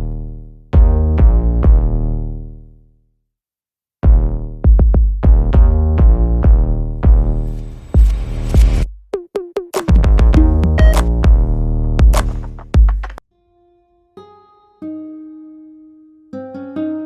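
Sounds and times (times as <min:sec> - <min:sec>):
electronic music with synth hits: 0:00.8 - 0:02.0, 0:04.1 - 0:08.9, 0:09.7 - 0:13.2.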